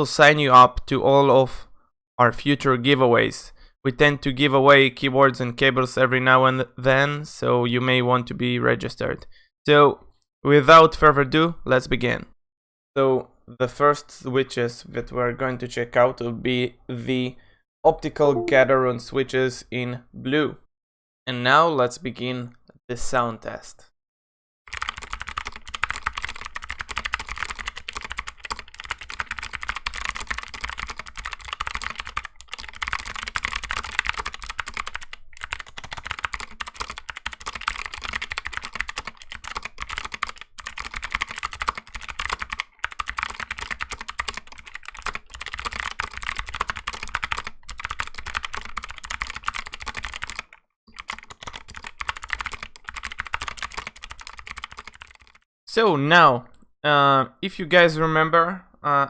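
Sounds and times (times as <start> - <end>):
fast typing on mechanical keyboard: 24.7 - 55.4.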